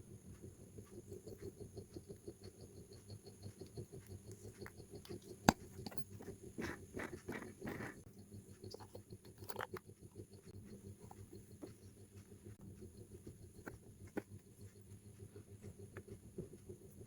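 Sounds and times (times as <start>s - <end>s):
rustling and scraping handling noise: 4.1s - 8.1s.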